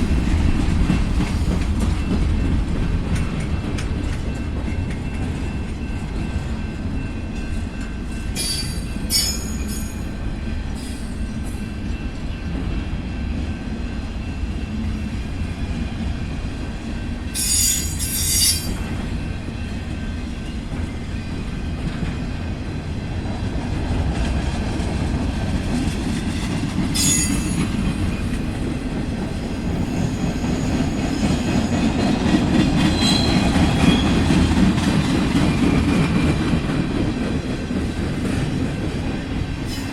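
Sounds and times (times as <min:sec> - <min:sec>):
freight train rumbling: 0:00.0 - 0:39.9
train wheel squeals: 0:04.2 - 0:12.5, 0:17.3 - 0:21.8, 0:26.3 - 0:28.5, 0:29.8 - 0:36.0, 0:39.6 - 0:39.9.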